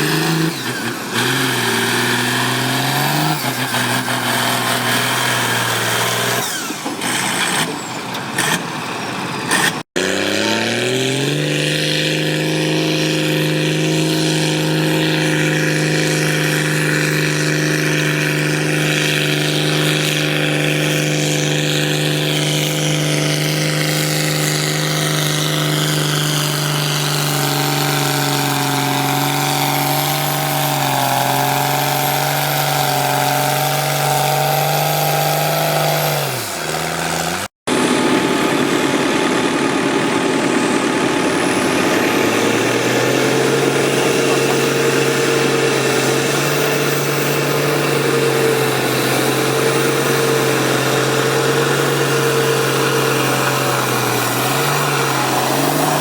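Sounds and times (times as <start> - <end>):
second tractor engine at high revs: 0.0 - 56.0
tractor engine at high revs: 0.0 - 56.0.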